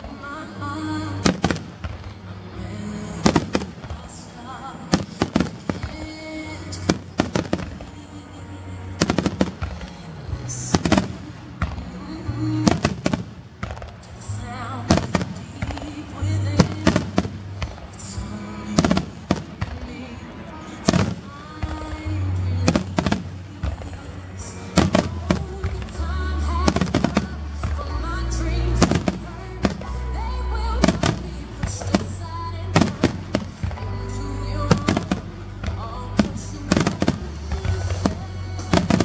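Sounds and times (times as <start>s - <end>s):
fireworks bursting: 0.0s - 39.0s.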